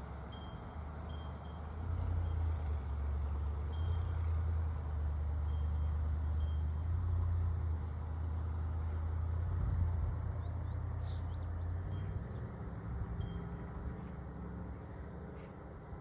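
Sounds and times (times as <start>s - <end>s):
low vehicle rumble: 0.0s - 16.0s
faint bird chirps: 10.3s - 12.9s.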